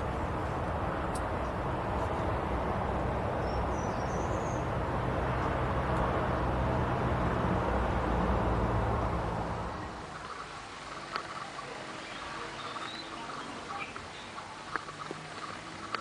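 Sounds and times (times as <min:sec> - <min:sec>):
low rumbling noise: 0:00.0 - 0:10.9
faint high bird chirp: 0:03.4 - 0:04.7, 0:12.0 - 0:14.4.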